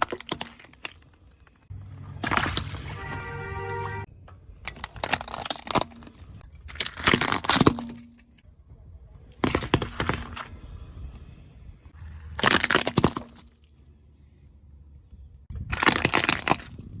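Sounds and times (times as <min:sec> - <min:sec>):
objects crunching under car tyre: 0:00.0 - 0:08.4, 0:09.3 - 0:10.8, 0:11.9 - 0:13.8, 0:15.5 - 0:17.0.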